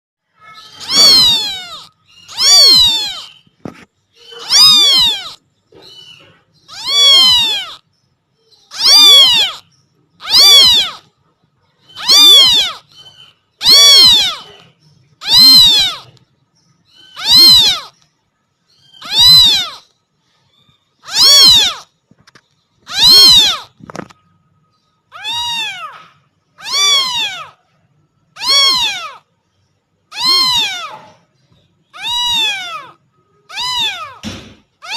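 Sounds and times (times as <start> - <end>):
kitten meowing loudly: 0.6 - 3.4, 4.3 - 5.4, 6.7 - 7.8, 8.7 - 9.6, 10.2 - 11.1, 12.0 - 12.9, 13.6 - 14.6, 15.2 - 16.2, 17.2 - 18.0, 19.0 - 19.8, 21.0 - 21.9, 22.9 - 23.8, 25.1 - 27.6, 28.4 - 29.3, 30.1 - 31.1, 32.0 - 34.9.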